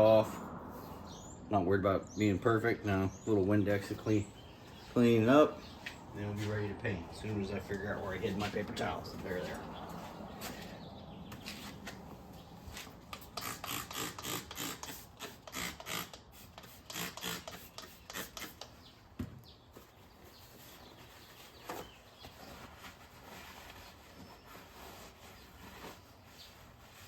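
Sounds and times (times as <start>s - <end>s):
paper towel wiping metal wheel: 20.5s - 27.0s.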